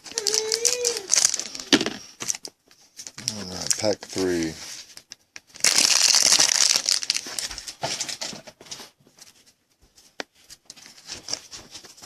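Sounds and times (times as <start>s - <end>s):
foil card pack rustling: 0.0s - 9.4s.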